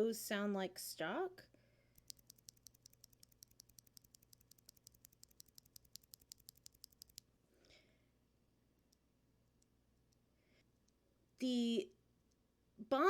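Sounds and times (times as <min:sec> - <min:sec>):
keyboard switches clicking: 0:02.0 - 0:07.2.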